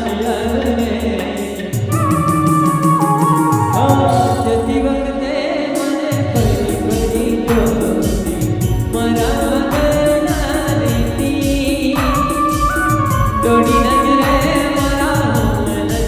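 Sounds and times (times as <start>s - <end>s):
steady drum beat: 0.0s - 4.7s, 5.8s - 16.0s
singing over instrumental backing: 0.0s - 16.0s.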